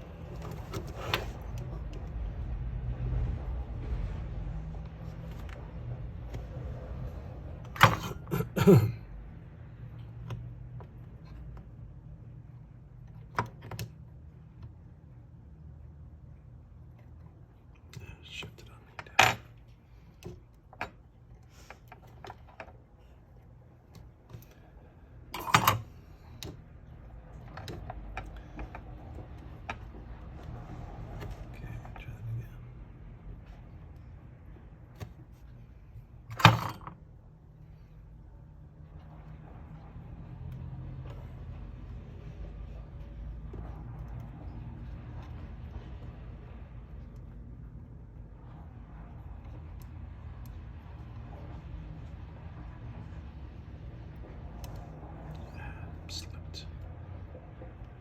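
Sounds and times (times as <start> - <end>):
parts clattering: 7.6 - 8.8, 25.2 - 26.6, 36.3 - 37.0.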